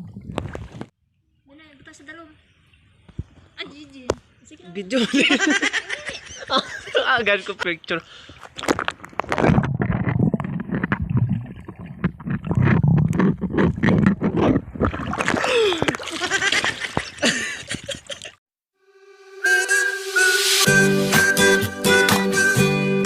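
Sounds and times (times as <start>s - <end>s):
water splashing: 7.7s - 18.4s.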